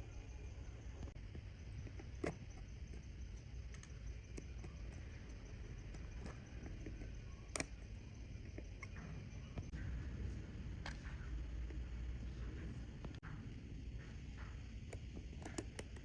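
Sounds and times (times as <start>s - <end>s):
low steady hum: 0.0s - 16.0s
tools clicking on watch parts: 14.8s - 16.0s.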